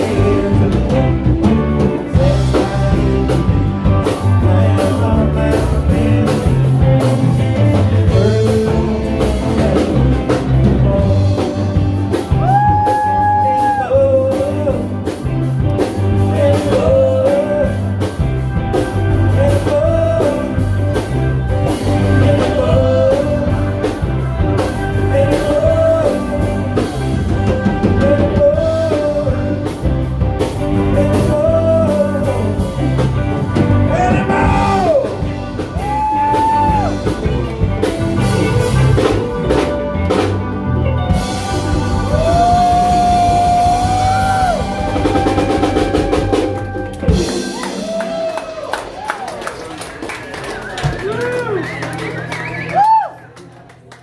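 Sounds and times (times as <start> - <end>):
melodic lead guitar line: 0.0 - 49.1
live rock band playing: 0.0 - 53.4.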